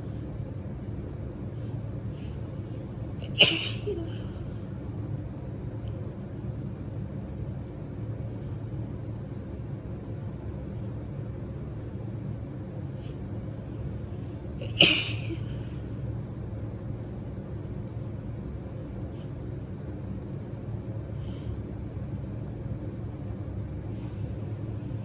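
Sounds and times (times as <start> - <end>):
low background hum: 0.0 - 25.0
woman sneezing: 3.2 - 4.3, 14.6 - 15.6.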